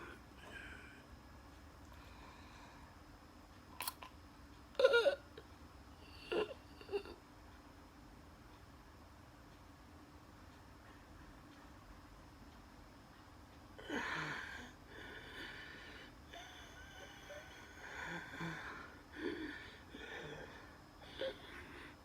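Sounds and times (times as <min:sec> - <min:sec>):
wheezy laboured breathing: 0:13.8 - 0:22.0.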